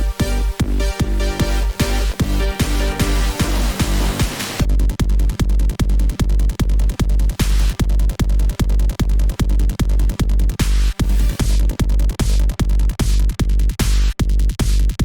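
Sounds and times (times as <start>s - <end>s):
electronic dance music: 0.0s - 4.7s
noise build-up: 0.0s - 4.9s
heavy sub-bass: 0.0s - 15.0s
rapid kick-drum hits: 0.0s - 15.0s.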